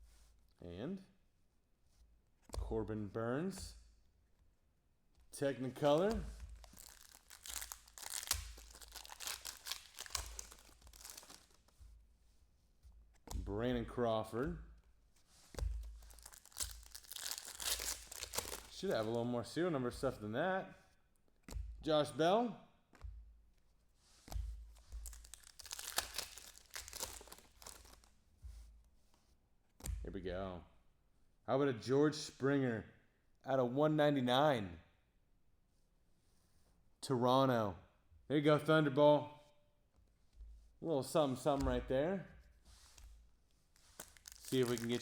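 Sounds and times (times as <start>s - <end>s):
cards crinkling and swishing: 5.3s - 13.4s, 15.1s - 19.3s, 23.9s - 29.3s, 42.5s - 45.0s.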